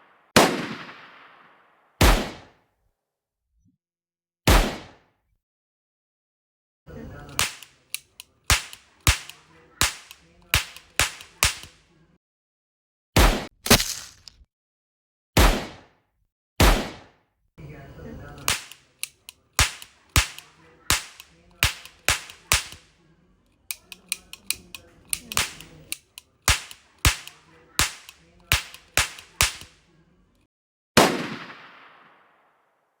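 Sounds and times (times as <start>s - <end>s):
gunshots: 0.4s - 1.4s, 7.3s - 11.9s, 15.4s - 15.8s, 16.6s - 17.1s, 18.4s - 23.0s, 23.7s - 29.9s, 31.0s - 32.4s.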